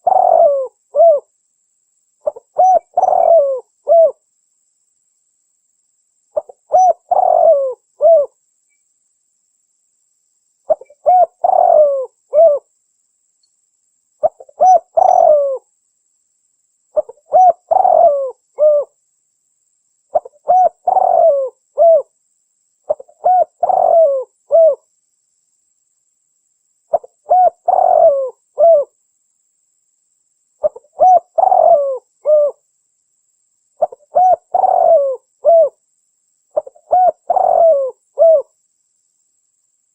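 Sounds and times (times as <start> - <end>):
dove cooing: 0.0 - 1.3, 2.2 - 4.2, 6.4 - 8.4, 10.7 - 12.7, 14.2 - 15.6, 17.0 - 19.0, 20.1 - 22.1, 22.9 - 24.8, 26.9 - 29.0, 30.6 - 32.6, 33.8 - 35.8, 36.6 - 38.5.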